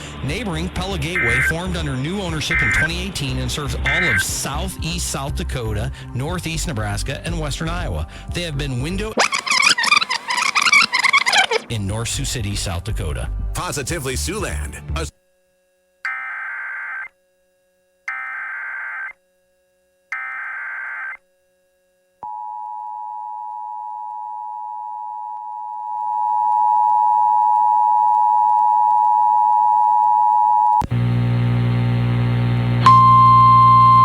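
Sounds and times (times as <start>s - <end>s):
loud buzzing hum with static: 0.8s - 4.3s, 30.8s - 34.0s
digital data squawk bursts: 3.9s - 4.2s, 9.2s - 11.7s
two-tone attention signal: 32.8s - 34.0s.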